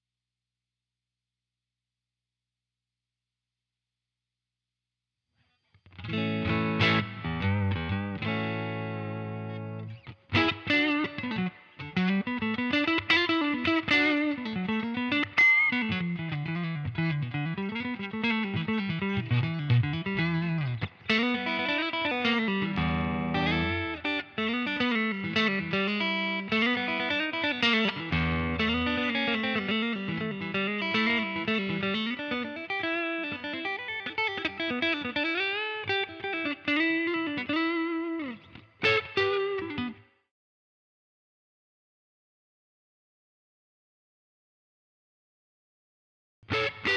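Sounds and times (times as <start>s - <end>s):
electric guitar chords: 5.9s - 40.0s, 46.5s - 46.9s
electric guitar lead line: 5.9s - 40.0s, 46.5s - 46.9s.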